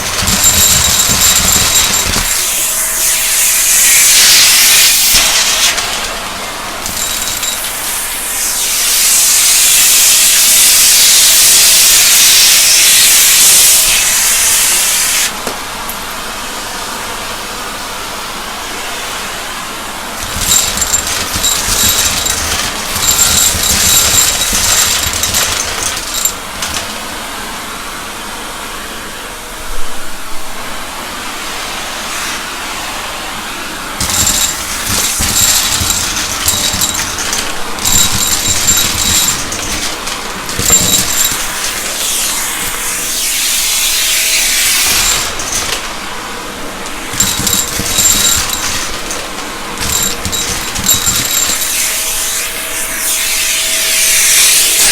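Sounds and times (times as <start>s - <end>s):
vacuum cleaner whine: 0.0s - 54.9s
vacuum cleaner rushing hiss: 30.9s - 34.0s.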